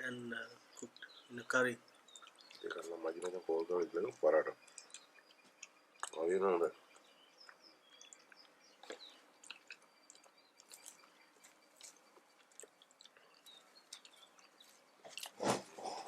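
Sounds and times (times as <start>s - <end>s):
person chewing food: 1.9s - 3.3s, 4.6s - 6.2s, 6.9s - 15.6s.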